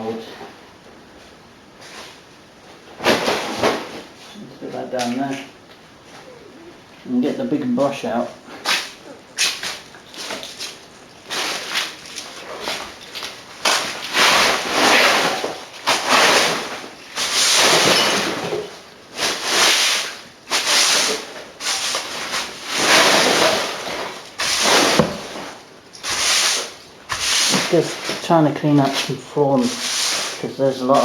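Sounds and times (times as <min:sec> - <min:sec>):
brush sweeping floor: 0:08.6 - 0:31.0.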